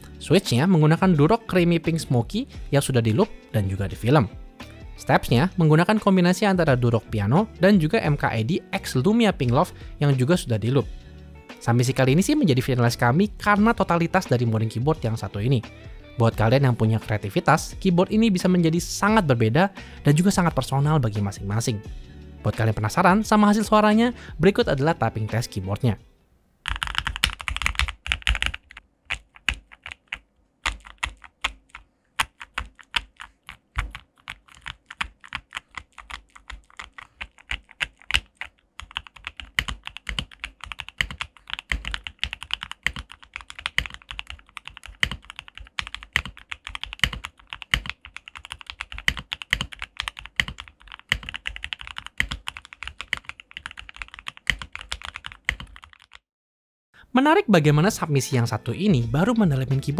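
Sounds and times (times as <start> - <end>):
mechanical keyboard typing: 26.6 - 56.2.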